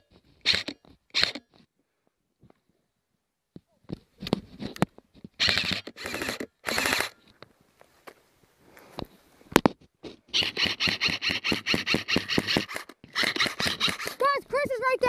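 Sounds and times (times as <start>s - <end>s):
airsoft gun firing: 5.4s - 7.2s, 10.4s - 14.2s.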